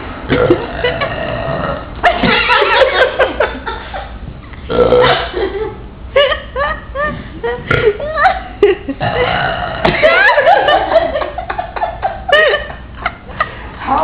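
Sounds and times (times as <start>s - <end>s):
person belching loudly: 0.3s - 1.9s, 4.7s - 5.4s, 9.0s - 10.0s.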